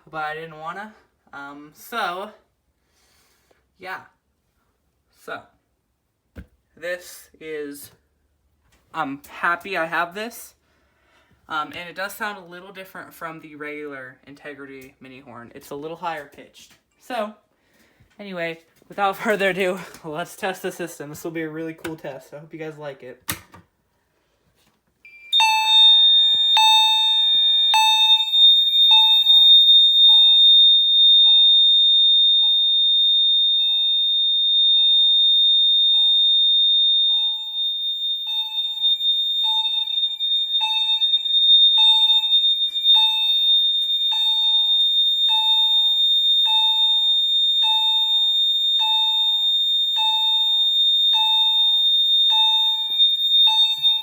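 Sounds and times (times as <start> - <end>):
fire alarm high-pitched tone: 25.0 - 54.0
alarm ding: 25.1 - 31.2, 36.4 - 54.0.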